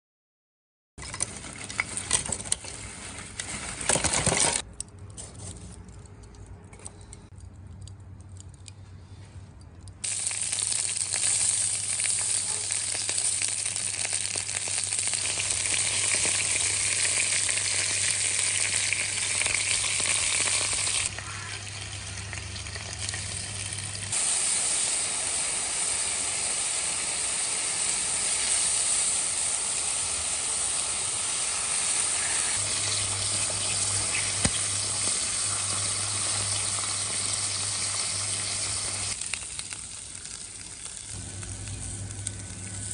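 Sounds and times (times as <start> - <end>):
food sizzling on a grill: 10.0 - 42.9.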